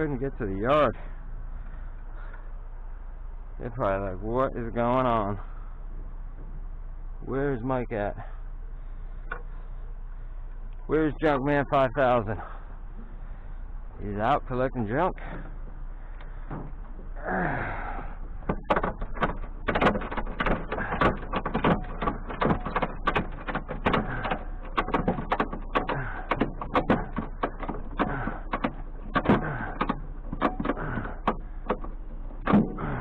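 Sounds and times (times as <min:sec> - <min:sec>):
rapid clattering and knocking: 0:15.1 - 0:33.0.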